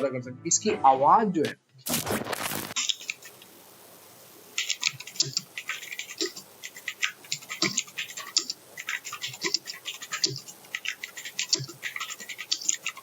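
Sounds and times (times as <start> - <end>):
mechanical keyboard typing: 2.8 - 3.3, 4.6 - 13.0.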